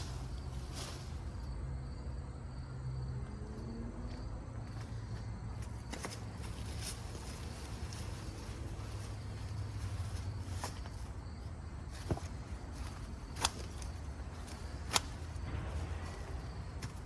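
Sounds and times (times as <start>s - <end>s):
scraping in soil: 0.0s - 1.6s, 5.6s - 11.3s.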